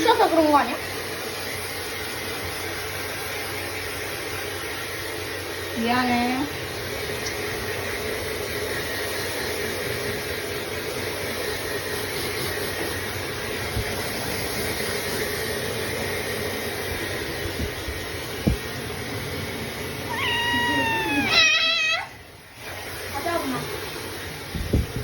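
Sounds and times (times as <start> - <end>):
hair dryer blowing: 0.0 - 25.0
cat meowing: 20.1 - 22.3.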